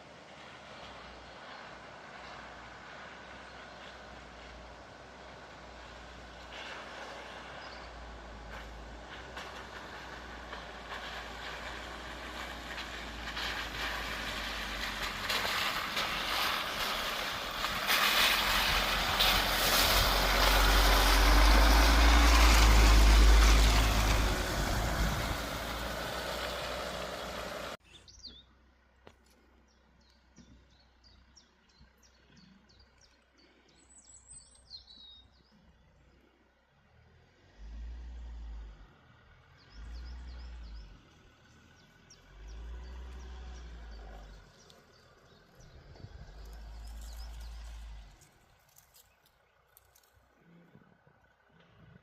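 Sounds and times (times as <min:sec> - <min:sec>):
car engine and rolling noise: 0:00.0 - 0:52.0.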